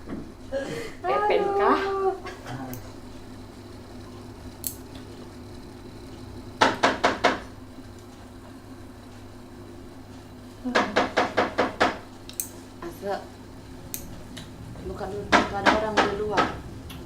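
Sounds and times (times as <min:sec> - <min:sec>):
low steady hum: 0:00.0 - 0:11.2, 0:11.8 - 0:17.0
knocking on a door: 0:06.6 - 0:07.4, 0:10.7 - 0:12.0, 0:15.3 - 0:16.6.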